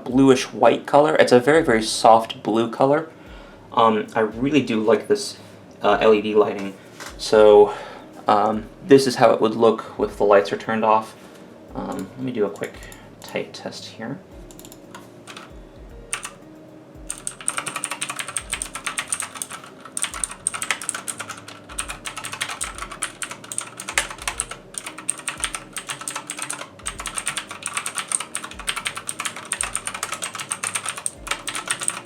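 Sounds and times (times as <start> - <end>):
fast typing on clicky keyboard: 14.5 - 15.5, 16.1 - 16.4, 17.1 - 32.0.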